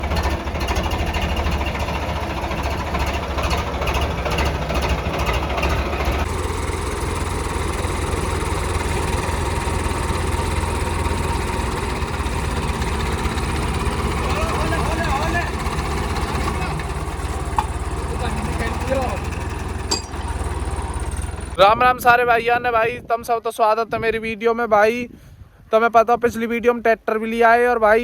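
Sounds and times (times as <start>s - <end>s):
tractor diesel engine running: 0.0s - 22.2s.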